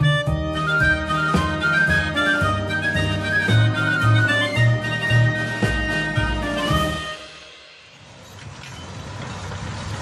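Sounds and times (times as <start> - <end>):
background music with bass: 0.0 - 7.9.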